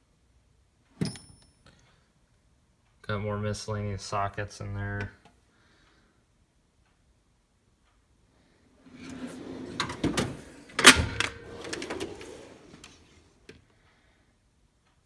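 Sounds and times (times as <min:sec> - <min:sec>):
metal drawer sliding on runners: 0:08.8 - 0:13.3
drawer closing metal clunk: 0:08.9 - 0:13.2
sockets rattling: 0:09.8 - 0:13.2.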